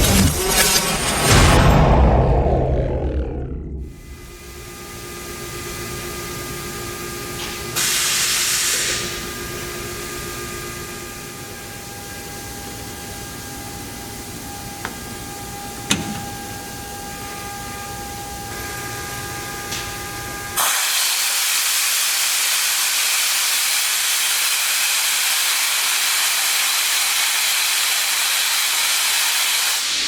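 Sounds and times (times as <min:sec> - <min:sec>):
air compressor running: 0:03.8 - 0:19.5, 0:20.5 - 0:30.0
burst of hissing air: 0:07.8 - 0:09.2.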